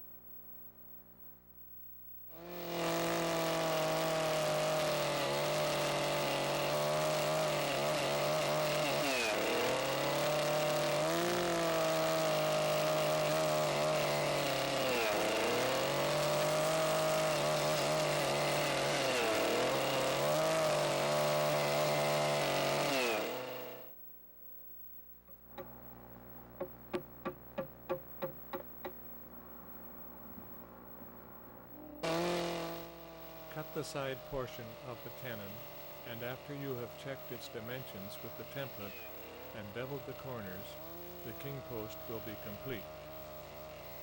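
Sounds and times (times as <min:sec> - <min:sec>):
chainsaw cutting timber: 0:02.3 - 0:24.0, 0:32.0 - 0:44.0.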